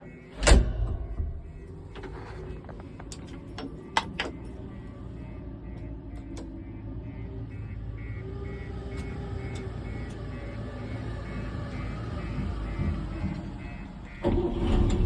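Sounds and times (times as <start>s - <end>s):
low engine rumble: 0.0s - 15.0s
loud door clunk: 0.3s - 4.4s
sharp clicks and knocks: 0.4s - 4.4s.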